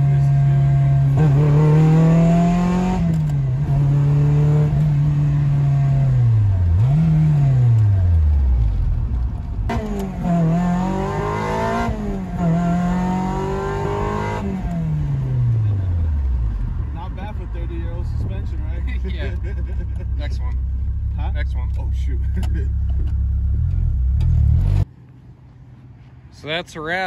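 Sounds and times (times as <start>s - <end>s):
car engine revving: 0.0s - 24.9s.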